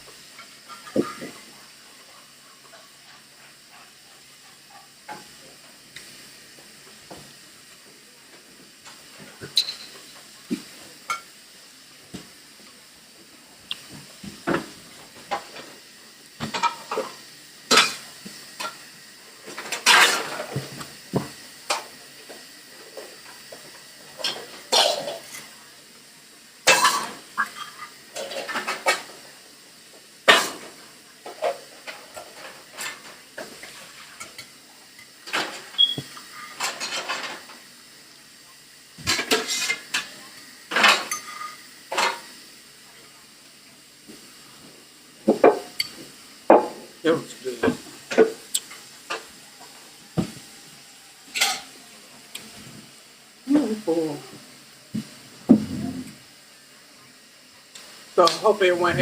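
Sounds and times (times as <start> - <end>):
cutlery clinking on a plate: 9.5 - 10.2, 40.7 - 42.3.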